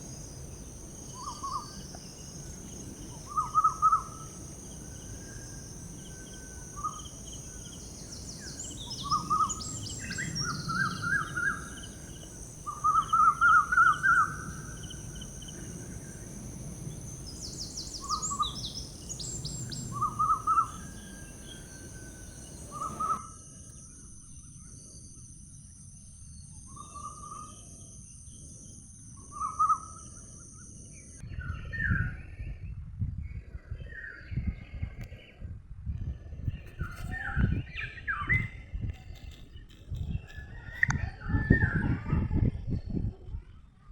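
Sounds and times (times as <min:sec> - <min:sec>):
background hiss: 0:00.0 - 0:23.2
songbirds chirping and trilling: 0:00.0 - 0:23.2.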